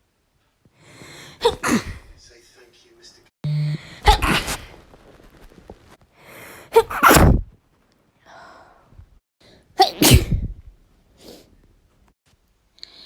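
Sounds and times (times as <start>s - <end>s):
woman sneezing: 1.4s - 2.1s, 4.0s - 4.7s, 6.7s - 7.4s, 9.8s - 10.5s.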